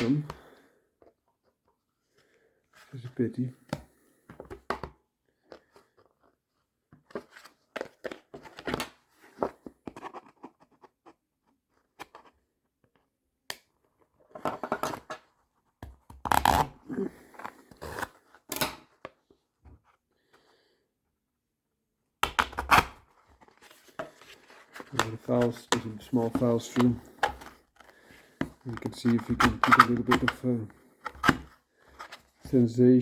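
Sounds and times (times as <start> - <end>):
hand tool scraping plastic: 16.2 - 18.7, 22.5 - 32.5.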